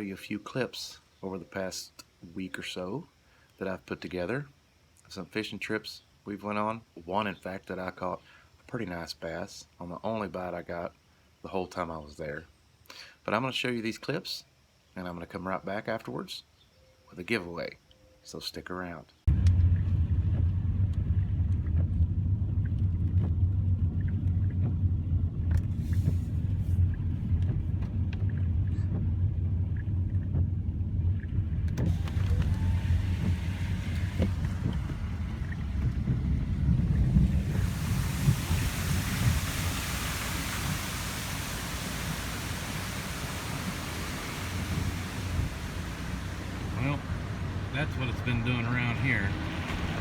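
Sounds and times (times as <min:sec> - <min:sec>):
rain ticking on vehicle: 0:19.3 - 0:50.0
vehicle engine rumble: 0:19.3 - 0:50.0.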